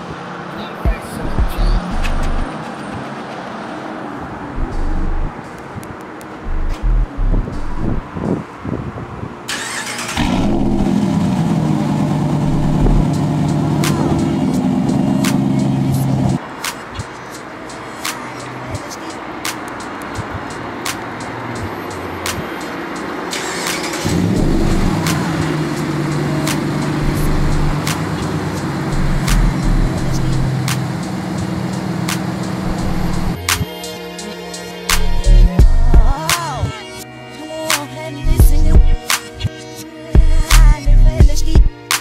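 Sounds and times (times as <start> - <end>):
engine running steadily: 0.4 - 2.6, 4.5 - 8.4, 9.5 - 33.8, 34.9 - 36.2, 38.2 - 39.0, 40.2 - 41.7
hip-hop beat snare hits: 0.9 - 2.5, 4.6 - 5.3, 13.8 - 14.3, 34.9 - 36.5, 38.4 - 39.3, 40.2 - 42.0
deep bass drone: 1.2 - 2.5, 4.5 - 5.4, 6.4 - 8.1, 10.2 - 16.4, 24.1 - 33.5, 34.9 - 36.2, 38.2 - 39.0, 40.2 - 41.7
pickup engine cranking: 9.5 - 16.4, 19.5 - 33.5.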